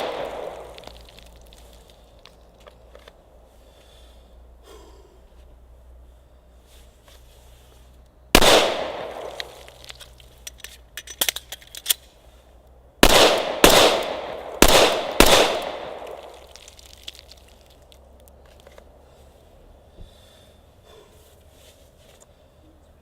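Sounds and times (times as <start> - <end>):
pistol shots: 0.0 - 0.8, 8.4 - 9.7, 13.0 - 16.4.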